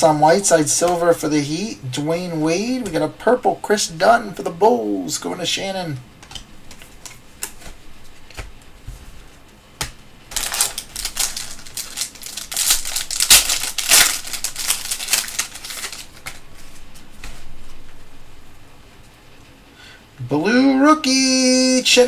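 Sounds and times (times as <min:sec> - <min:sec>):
wrapper crinkling and tearing: 0:10.3 - 0:16.8.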